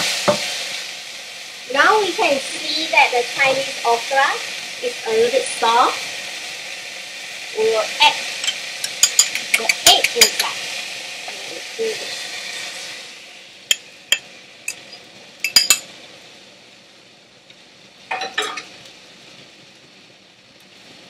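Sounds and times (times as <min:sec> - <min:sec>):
egg sizzling in frying pan: 0:00.0 - 0:21.0
utensil clinking against pan: 0:08.4 - 0:10.5, 0:13.7 - 0:15.8.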